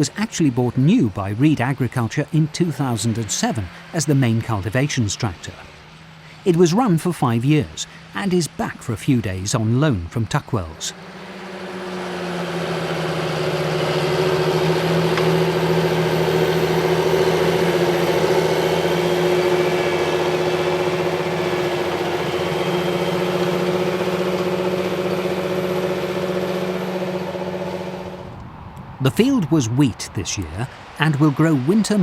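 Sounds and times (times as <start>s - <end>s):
tractor diesel engine under load: 0.0s - 32.0s.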